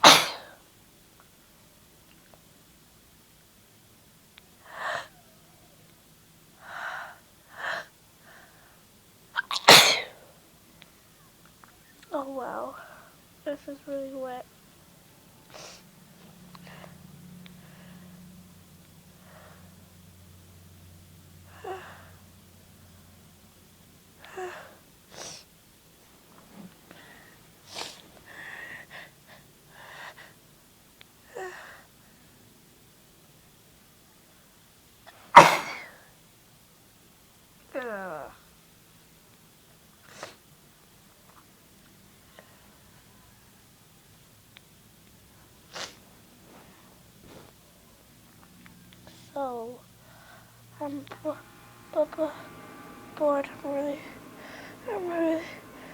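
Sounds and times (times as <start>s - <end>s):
woman sneezing: 0.0s - 0.6s, 9.4s - 10.3s, 35.3s - 36.0s.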